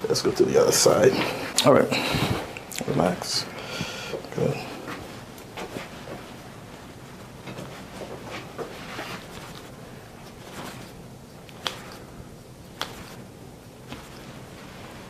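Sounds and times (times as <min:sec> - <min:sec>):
faint rustling of clothing: 0:04.2 - 0:15.0
sharp joint pops: 0:11.5 - 0:12.0.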